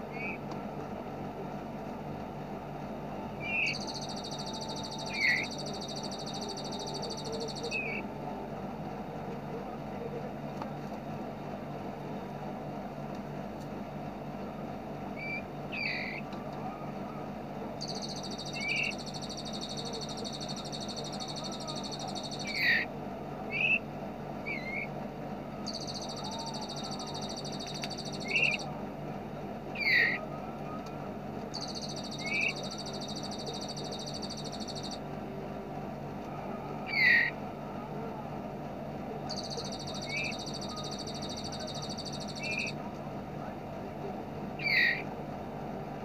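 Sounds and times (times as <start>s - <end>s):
steady low hum: 0.0s - 46.0s
rapid rattling bird trills: 3.4s - 8.0s, 15.2s - 16.2s, 17.8s - 22.9s, 23.5s - 23.8s, 25.6s - 28.7s, 31.5s - 35.0s, 39.3s - 42.8s, 44.6s - 45.0s.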